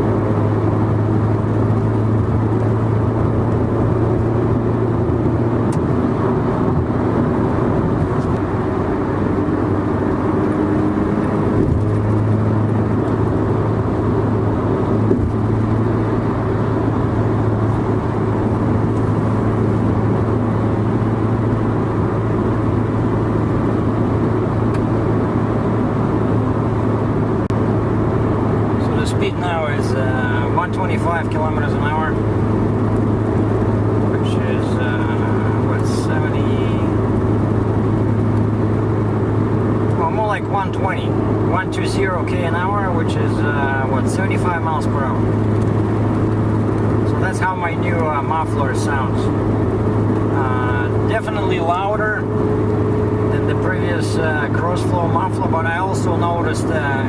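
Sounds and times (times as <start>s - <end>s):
low exhaust drone: 0.0s - 57.0s
tyre and road noise: 0.0s - 57.0s.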